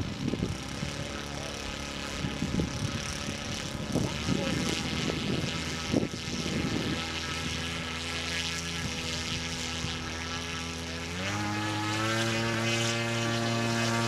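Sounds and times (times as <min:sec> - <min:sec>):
model airplane motor and propeller: 0:00.0 - 0:14.0.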